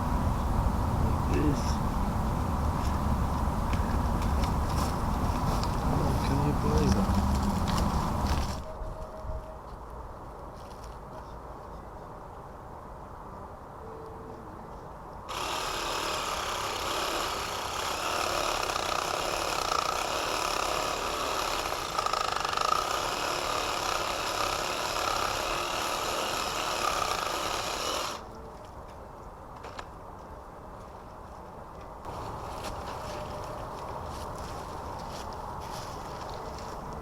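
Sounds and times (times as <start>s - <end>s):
loud machine noise: 15.3s - 28.2s.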